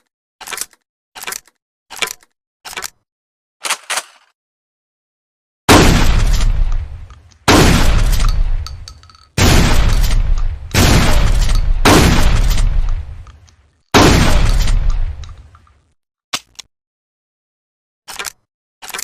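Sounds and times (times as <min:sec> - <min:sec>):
shotgun shots: 0:05.7 - 0:13.4, 0:14.0 - 0:15.5.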